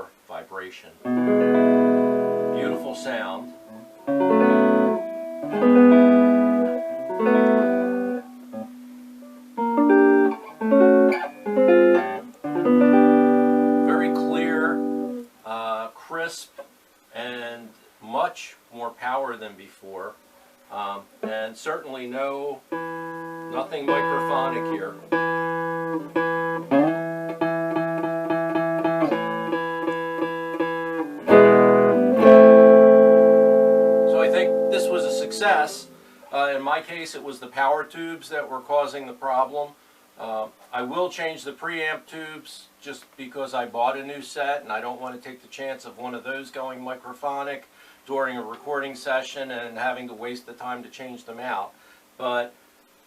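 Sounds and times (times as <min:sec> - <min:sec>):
electric guitar chords through amplifier: 0:01.1 - 0:15.3, 0:22.7 - 0:36.2.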